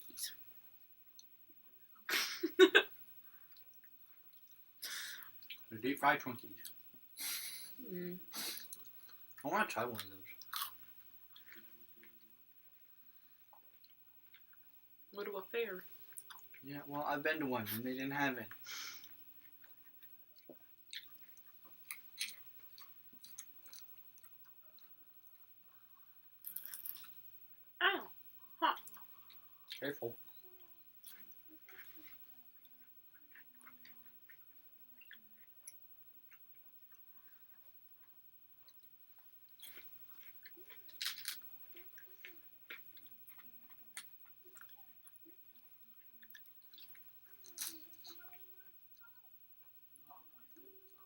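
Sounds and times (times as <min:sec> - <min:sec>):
wet chewing mouth sounds: 0:18.5 - 0:25.0, 0:30.4 - 0:48.4.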